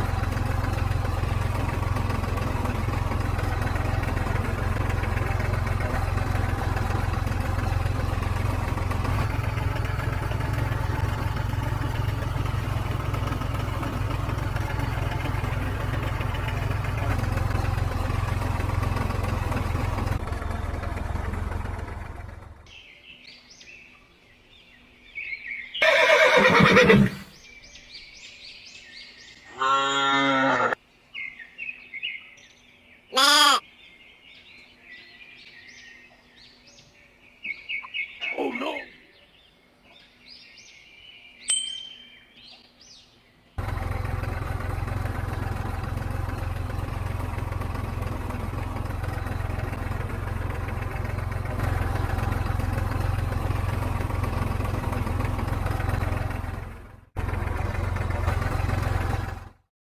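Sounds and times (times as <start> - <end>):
low engine-like rumble: 0.0 - 25.6, 42.1 - 59.6
loud animal calls: 25.8 - 27.3, 29.5 - 30.8, 33.1 - 33.6.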